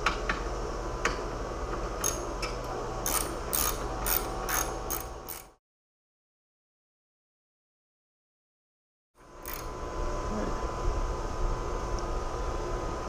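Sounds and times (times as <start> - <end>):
ratchet wrench clicking: 3.0 - 5.5, 9.5 - 9.7
steady low hum: 9.2 - 13.0.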